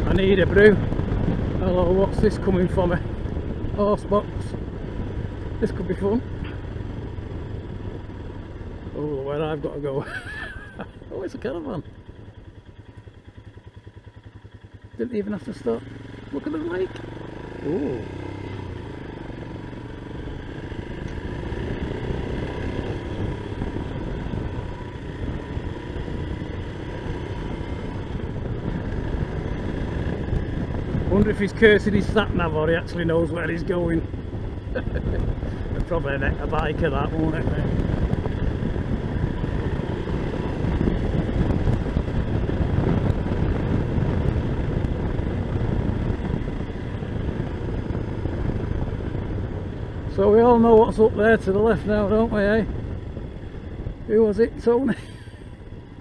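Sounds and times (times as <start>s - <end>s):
wind on microphone: 0.0s - 6.6s, 22.1s - 56.0s
motorcycle engine running: 0.0s - 56.0s
road rumble: 0.0s - 56.0s.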